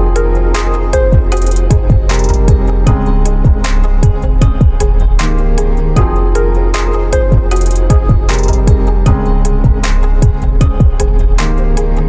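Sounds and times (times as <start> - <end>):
sharp percussion hits: 0.6 - 6.2, 6.8 - 11.6
deep kick drums: 0.9 - 6.4, 7.1 - 11.6.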